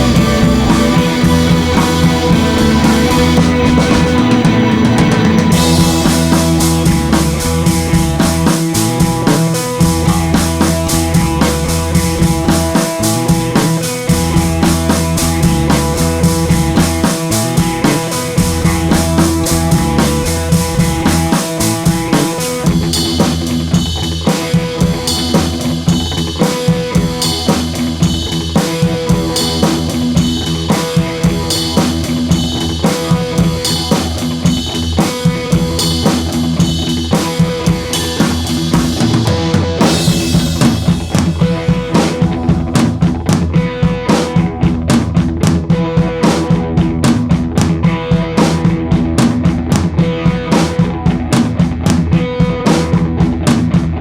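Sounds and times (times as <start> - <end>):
music with drum-kit beat: 0.0 - 54.0.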